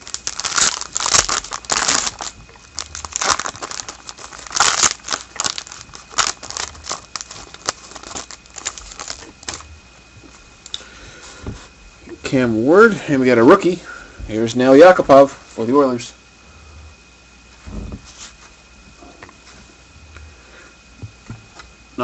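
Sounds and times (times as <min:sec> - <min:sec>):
card pack wrappers crinkling: 0:00.0 - 0:09.7
cards rustling: 0:00.0 - 0:09.7.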